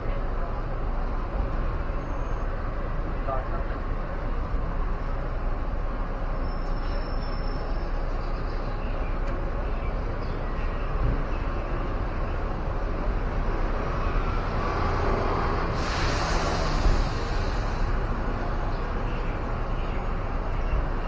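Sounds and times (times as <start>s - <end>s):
traffic rumble: 0.0s - 21.0s
hissing rush: 15.8s - 18.0s.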